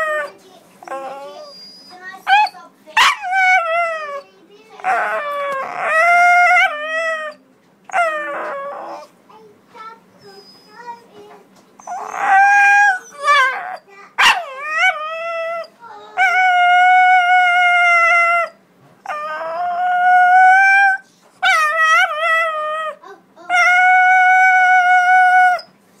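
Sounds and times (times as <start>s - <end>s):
dog howling: 0.0s - 4.2s, 4.8s - 9.1s, 11.8s - 25.6s
dog yelp: 0.0s - 4.2s, 11.8s - 16.6s.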